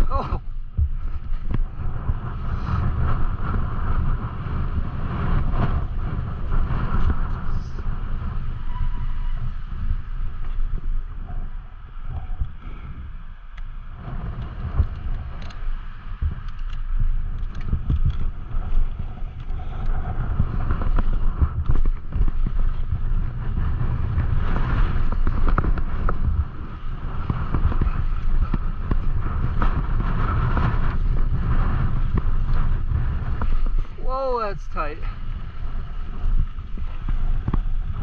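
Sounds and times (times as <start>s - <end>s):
bike rolling on dirt trail: 0.0s - 38.0s
wind buffeting microphone: 0.0s - 38.0s
clicks and knocks from bike: 14.3s - 23.1s, 24.2s - 33.9s, 36.2s - 38.0s.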